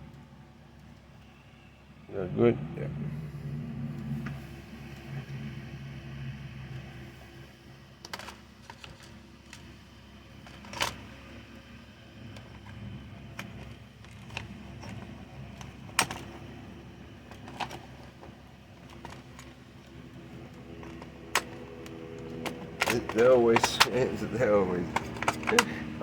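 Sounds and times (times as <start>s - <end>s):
low steady hum: 0.0s - 26.0s
tools clicking and knocking: 20.8s - 25.7s.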